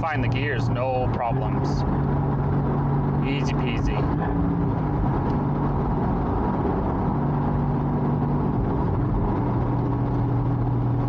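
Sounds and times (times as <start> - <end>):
car engine running: 0.0 - 11.0.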